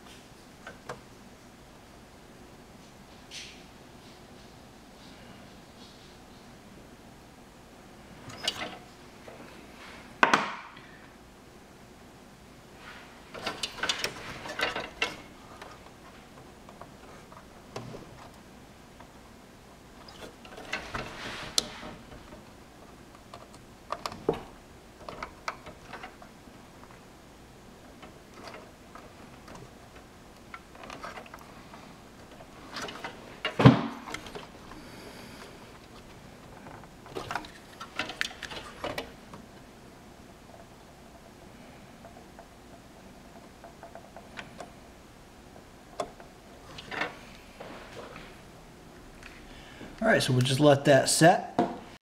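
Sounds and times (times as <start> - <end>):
hard parts clicking and knocking: 13.3 - 19.2, 20.0 - 27.1, 27.7 - 39.6, 40.3 - 44.9, 45.8 - 48.1.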